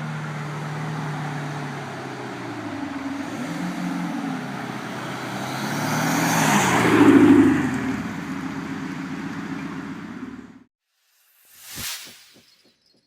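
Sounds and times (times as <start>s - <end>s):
car engine exhaust note: 0.0s - 5.5s.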